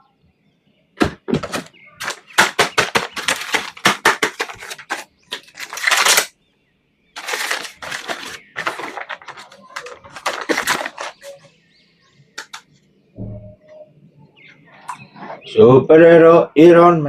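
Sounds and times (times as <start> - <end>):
packaging rustle: 1.0 - 6.3, 7.2 - 11.5
plastic toy clicks and taps: 12.4 - 12.7.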